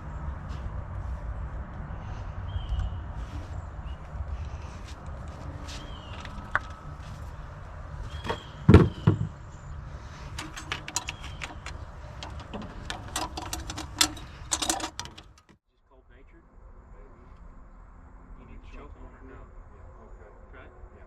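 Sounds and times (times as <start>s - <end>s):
steady low rumble: 0.0s - 8.6s
metal tools clicking and clanking: 10.2s - 15.6s.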